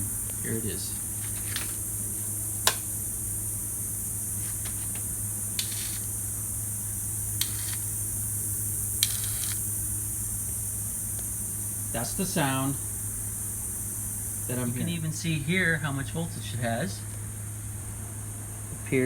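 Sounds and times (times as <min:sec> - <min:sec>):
starter grinding whirr: 0:03.9 - 0:12.9.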